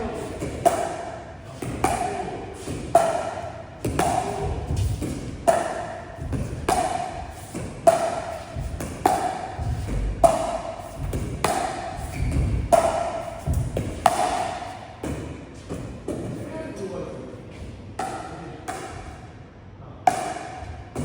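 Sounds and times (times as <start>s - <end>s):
paddle hitting plastic ball: 0.6s - 15.3s.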